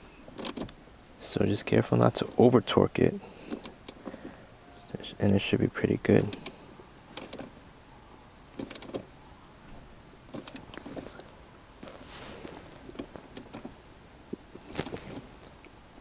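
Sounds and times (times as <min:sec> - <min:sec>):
soft rustle: 0:09.6 - 0:16.0.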